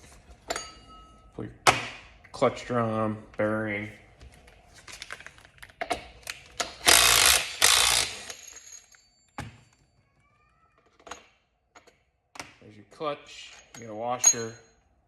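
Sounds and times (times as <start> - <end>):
metal parts clicking and rattling: 5.0 - 9.8.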